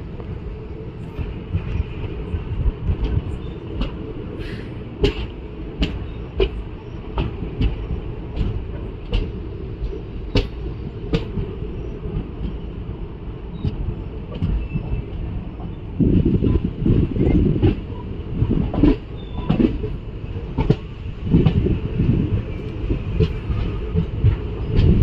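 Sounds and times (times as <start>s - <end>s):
train rumbling on track: 0.0s - 25.0s.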